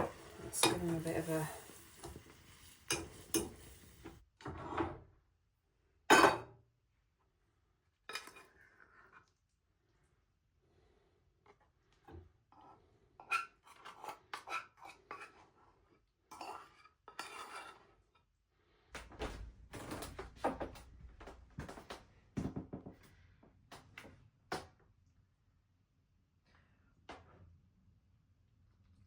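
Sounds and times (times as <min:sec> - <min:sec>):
cutlery clinking against pan: 0:00.0 - 0:04.2.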